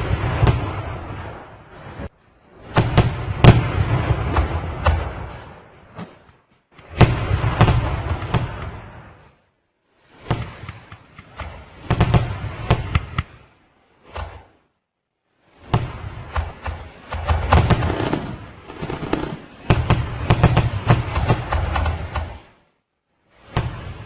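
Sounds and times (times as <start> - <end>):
sharp bangs and cracks: 0.0 - 9.4, 10.1 - 14.6, 15.6 - 22.7
low rumble: 0.0 - 24.0.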